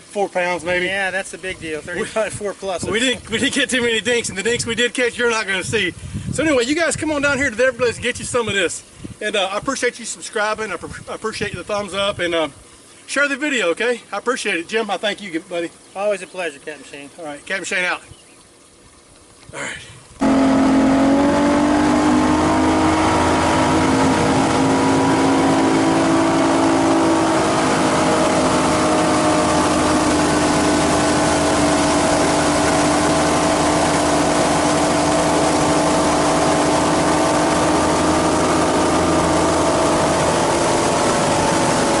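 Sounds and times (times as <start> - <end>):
outboard motor running at speed: 20.2 - 42.0.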